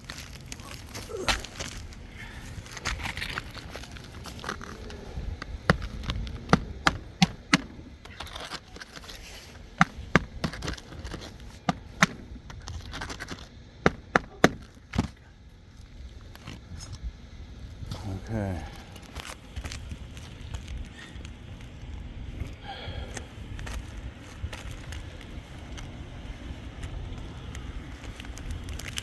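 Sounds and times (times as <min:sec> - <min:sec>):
shingles scraping and rustling: 0:00.0 - 0:17.0, 0:27.9 - 0:29.0
hammer knocking nails into shingle: 0:05.7 - 0:07.8, 0:09.8 - 0:12.3, 0:13.9 - 0:15.1.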